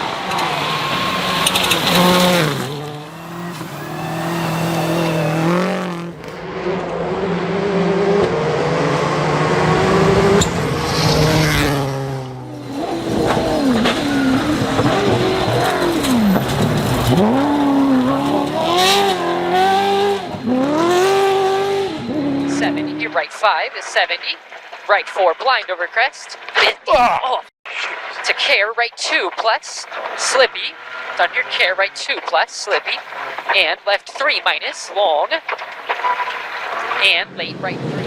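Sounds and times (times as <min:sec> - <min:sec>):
rally car engines revving: 0:00.0 - 0:24.9, 0:29.9 - 0:31.9, 0:35.3 - 0:38.0.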